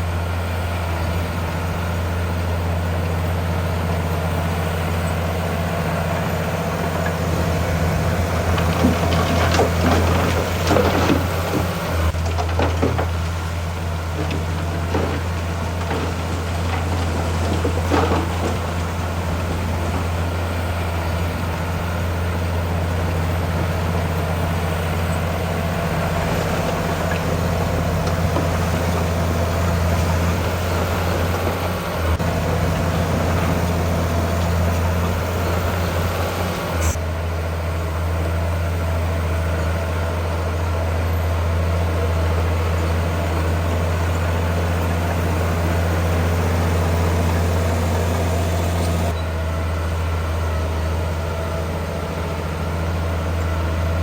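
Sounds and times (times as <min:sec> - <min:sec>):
heavy diesel engine running: 0:00.0 - 0:54.0
short clatters: 0:08.4 - 0:13.4.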